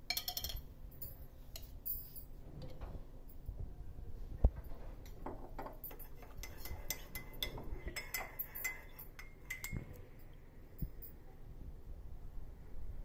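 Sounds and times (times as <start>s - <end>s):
spoon clinking against cup: 0.1s - 0.7s, 5.7s - 11.0s.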